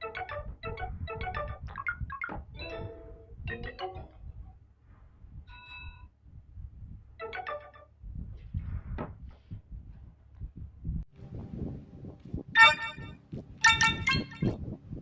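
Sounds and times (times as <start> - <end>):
phone notification tones: 0.0 - 4.1, 7.2 - 7.8, 12.6 - 14.5
low background rumble: 7.9 - 15.0
held beep: 12.6 - 14.5.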